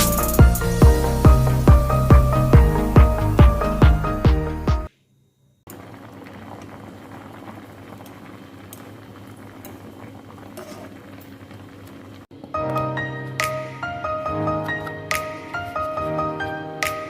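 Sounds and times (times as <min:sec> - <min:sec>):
liquid boiling in a pot: 0:05.7 - 0:12.5.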